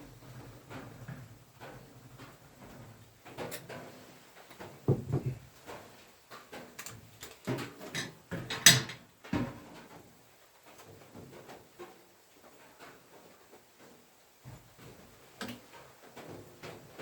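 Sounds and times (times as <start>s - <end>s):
objects knocking and clattering: 0.1s - 10.0s.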